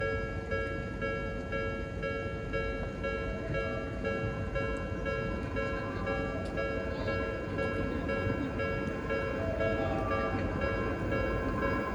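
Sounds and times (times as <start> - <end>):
level crossing warning bell: 0.0 - 11.9.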